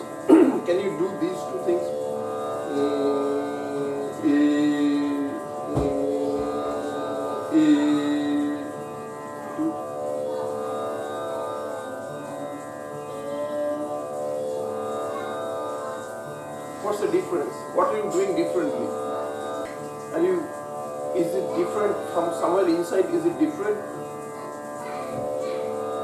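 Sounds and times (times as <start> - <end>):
person singing sustained vowels: 0.0 - 16.4
steady drone: 0.0 - 26.0.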